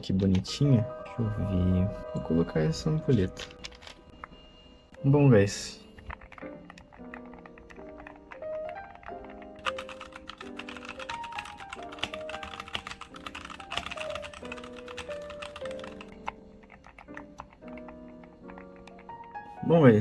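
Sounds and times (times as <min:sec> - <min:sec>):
background music: 0:00.0 - 0:20.0
mechanical keyboard typing: 0:03.2 - 0:04.3, 0:05.8 - 0:19.5.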